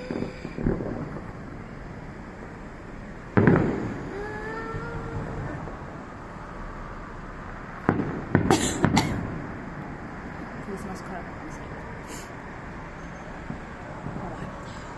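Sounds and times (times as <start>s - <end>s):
fireworks bangs: 0.0s - 2.7s, 3.3s - 6.0s, 7.8s - 9.8s
fireworks crackle: 0.0s - 6.1s, 7.7s - 12.4s, 13.0s - 14.9s.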